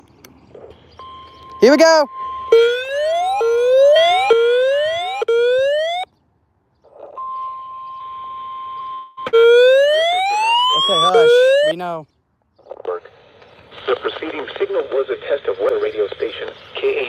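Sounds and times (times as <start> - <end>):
steady warning tone: 1.0 - 6.0, 9.2 - 11.8
rising electronic siren: 1.7 - 6.1, 9.2 - 11.8
radio static: 10.3 - 11.8.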